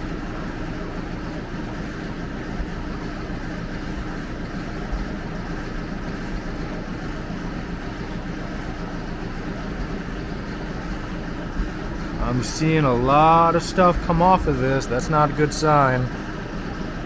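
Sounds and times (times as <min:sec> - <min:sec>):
steady mechanical drone: 0:00.0 - 0:17.0
faint low hum: 0:09.8 - 0:17.0.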